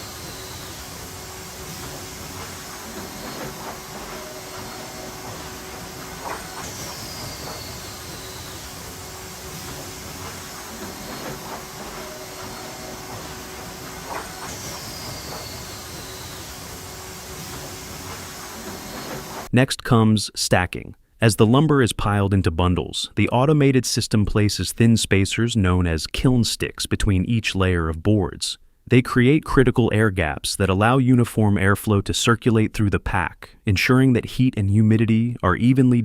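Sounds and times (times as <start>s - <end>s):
sawmill machinery rumbling: 0.0s - 19.5s.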